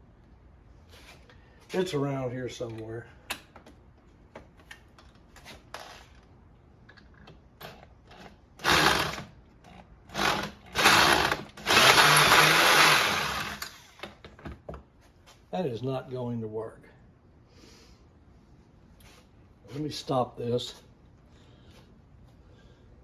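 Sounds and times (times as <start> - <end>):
power tool whirring: 8.6 - 9.3, 10.1 - 13.9.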